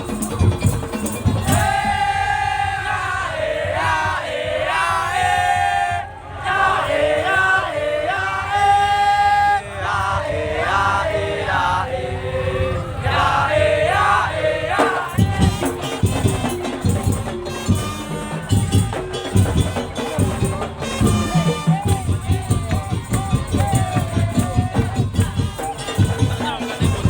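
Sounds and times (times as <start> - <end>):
fast dense drums and percussion: 0.0 - 5.8, 13.9 - 27.0.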